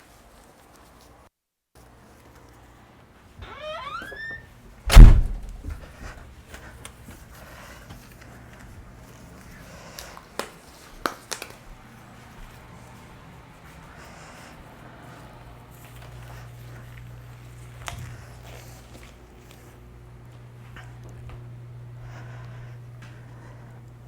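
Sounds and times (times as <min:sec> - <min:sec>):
door hinge creaking: 0:03.4 - 0:05.8
door shutting with thud: 0:03.4 - 0:05.9.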